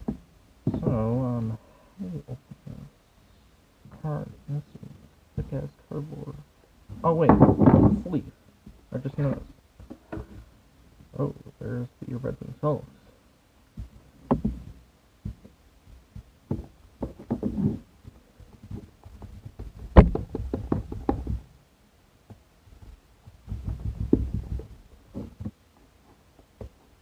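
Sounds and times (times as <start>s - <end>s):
cardboard box knocks and thumps: 13.8s - 15.5s, 16.2s - 21.5s, 23.4s - 25.6s.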